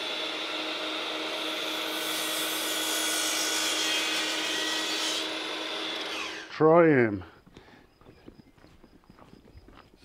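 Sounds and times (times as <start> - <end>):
mitre saw whine: 0.0 - 6.6
saw blade cutting wood: 0.0 - 6.6.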